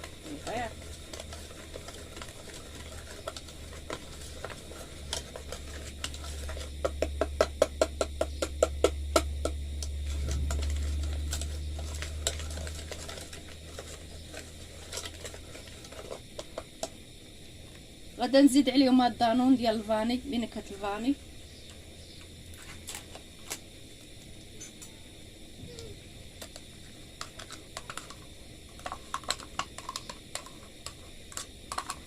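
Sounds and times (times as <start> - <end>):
low steady hum: 0.0 - 32.0
utensil knocking against bowl: 6.8 - 9.6.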